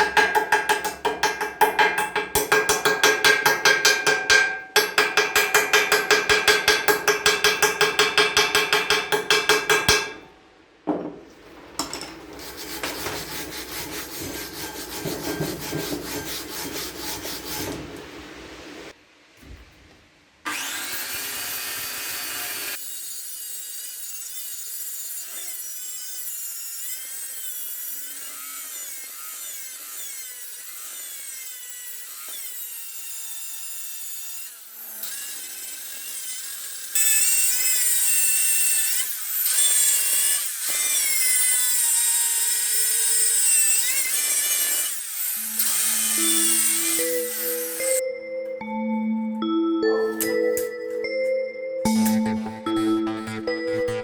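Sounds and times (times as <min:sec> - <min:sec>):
grinding wheel on metal: 0:00.0 - 0:10.2, 0:11.6 - 0:18.6, 0:36.6 - 0:48.0.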